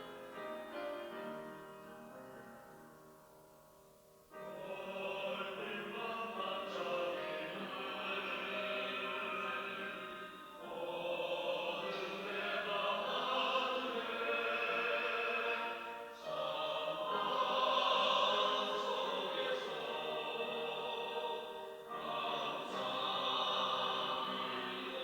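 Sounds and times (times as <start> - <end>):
church choir singing: 4.3 - 25.0.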